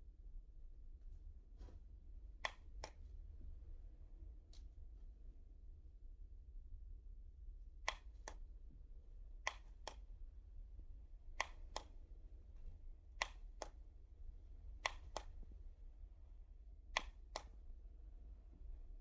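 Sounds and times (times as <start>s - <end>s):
low steady hum: 0.0s - 19.0s
faint sharp clicks: 2.4s - 3.1s, 7.8s - 8.5s, 9.4s - 10.1s, 11.3s - 13.9s, 14.7s - 15.6s, 16.9s - 19.0s.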